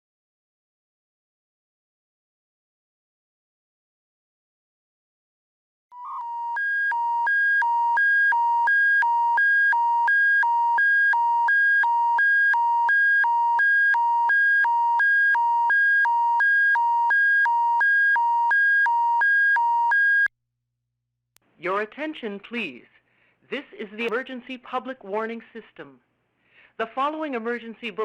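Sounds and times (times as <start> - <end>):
alternating two-pitch alert tone: 6.0 - 20.3.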